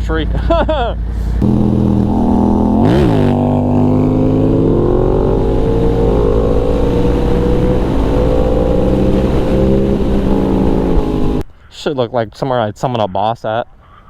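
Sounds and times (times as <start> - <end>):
motorcycle engine accelerating: 1.3 - 11.4.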